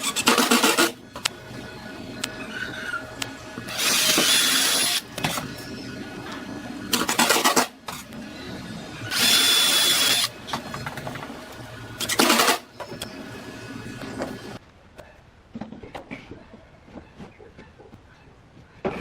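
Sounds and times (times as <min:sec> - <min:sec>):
electric drill whining: 0:03.7 - 0:05.1, 0:09.1 - 0:10.4.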